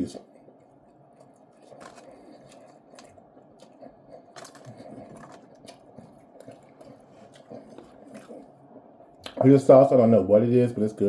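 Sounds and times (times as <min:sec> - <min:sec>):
person chewing food: 0:00.0 - 0:09.4.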